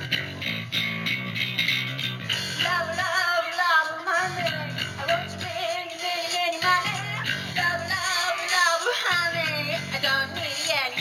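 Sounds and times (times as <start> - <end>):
bass guitar: 0.0 - 3.2, 4.1 - 5.6, 6.6 - 8.0, 9.2 - 11.0
guitar playing: 0.0 - 3.2
person singing: 2.3 - 11.0.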